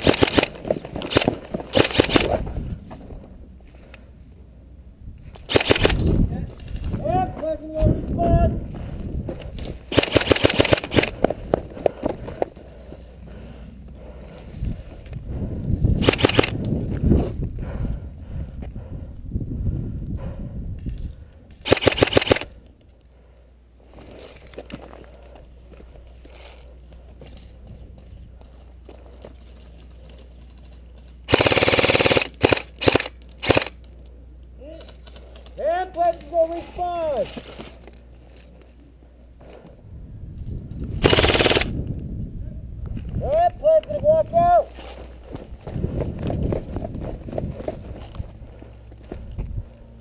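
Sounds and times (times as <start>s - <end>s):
airsoft guns firing: 0.0s - 2.4s, 5.5s - 6.1s, 9.9s - 11.2s, 16.0s - 16.5s, 21.6s - 22.5s, 31.3s - 33.8s, 41.0s - 41.8s.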